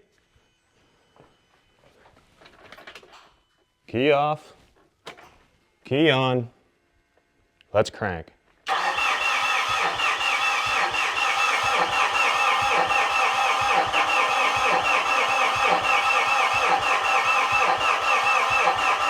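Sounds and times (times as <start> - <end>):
starter motor cranking diesel engine: 8.7 - 19.0.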